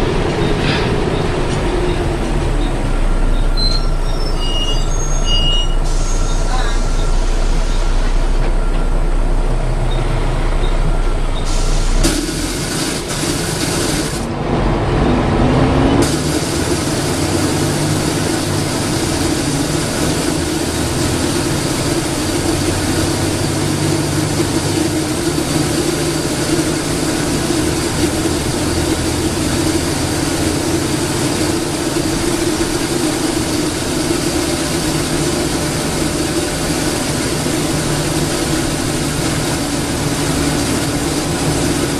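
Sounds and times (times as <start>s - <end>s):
bus diesel engine: 0.0s - 41.9s
loud hiss: 11.5s - 14.2s.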